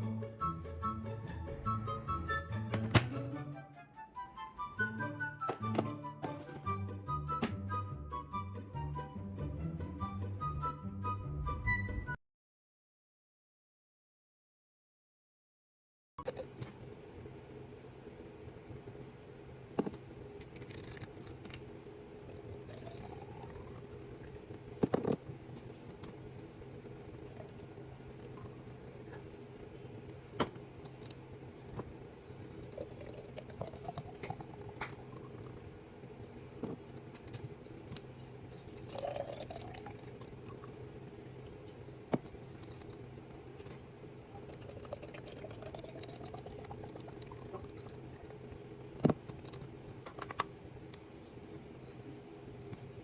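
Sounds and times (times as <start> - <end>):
steady low hum: 16.2 - 53.0
liquid pouring into containers: 22.2 - 43.4, 44.3 - 49.8.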